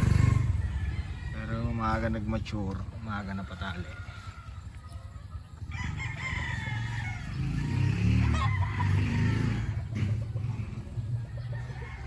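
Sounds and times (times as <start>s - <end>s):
rooster crowing: 0.0s - 2.2s, 3.1s - 9.9s, 11.2s - 12.0s.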